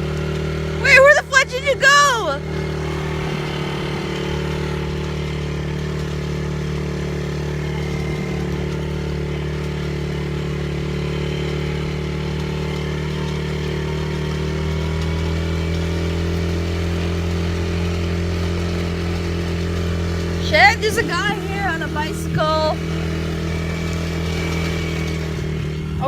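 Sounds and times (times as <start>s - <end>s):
atv engine running: 0.0s - 26.0s.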